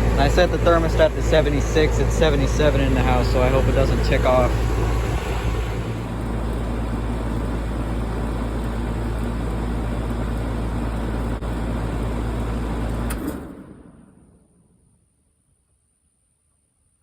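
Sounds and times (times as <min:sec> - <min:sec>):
air conditioner humming: 0:00.0 - 0:13.0
fan spinning down: 0:00.0 - 0:15.4.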